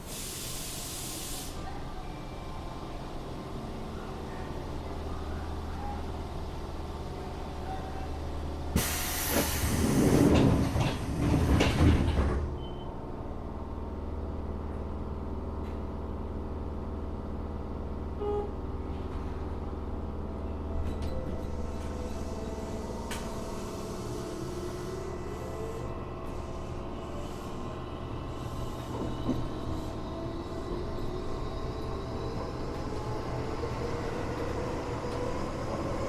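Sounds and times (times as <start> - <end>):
compressed air hiss: 0.0 - 1.6, 8.8 - 10.0
electric train hum: 0.0 - 36.0.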